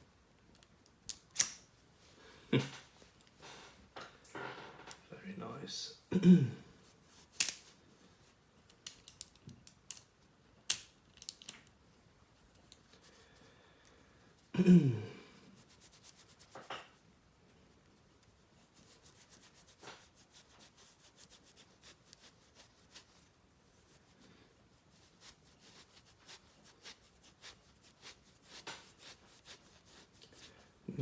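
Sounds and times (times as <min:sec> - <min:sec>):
cloth rubbing on metal: 0:06.8 - 0:08.7, 0:15.4 - 0:31.0.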